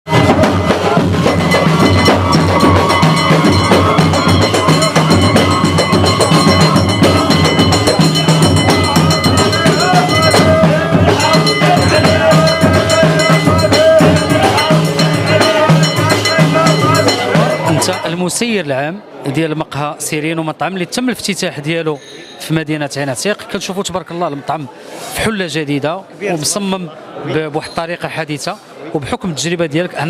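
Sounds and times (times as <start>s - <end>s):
drums and percussion beat: 0.1s - 18.5s
wavering melody: 0.2s - 18.2s.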